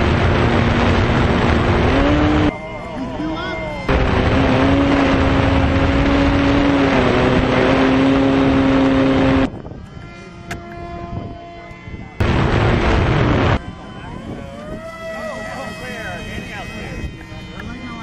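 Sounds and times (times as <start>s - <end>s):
rushing air noise: 0.0s - 2.5s, 3.9s - 9.8s, 12.2s - 14.4s
electric propeller whining: 0.0s - 18.0s.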